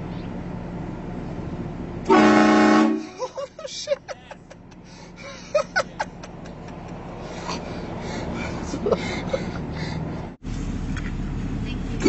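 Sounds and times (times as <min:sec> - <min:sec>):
car engine and road noise: 0:00.0 - 0:12.0
person laughing: 0:03.1 - 0:10.1.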